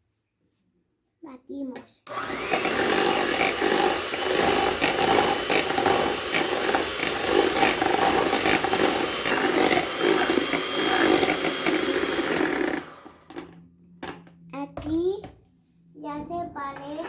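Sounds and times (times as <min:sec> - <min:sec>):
hand mixer motor whining: 0:02.1 - 0:13.5.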